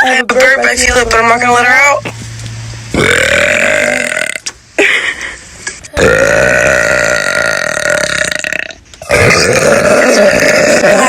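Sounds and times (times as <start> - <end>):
person burping loudly: 2.9 - 4.5, 5.9 - 11.0.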